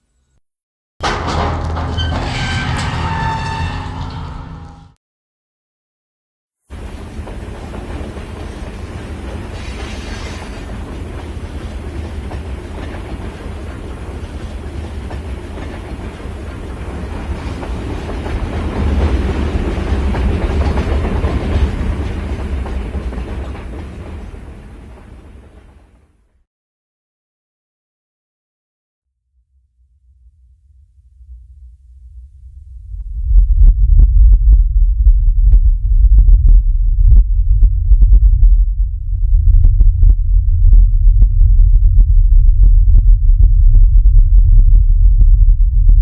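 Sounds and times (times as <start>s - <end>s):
low rumble: 29.8s - 46.0s.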